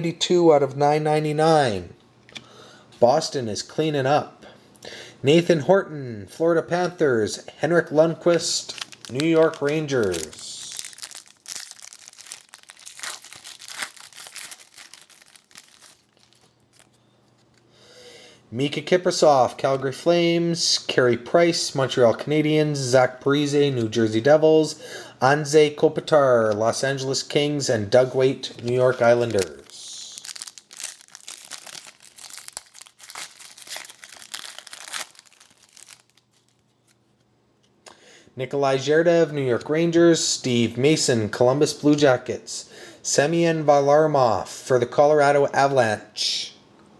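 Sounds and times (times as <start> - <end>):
cards being handled: 8.3 - 17.6, 28.5 - 37.0
foil card pack tearing and crinkling: 8.6 - 17.0, 28.7 - 36.6.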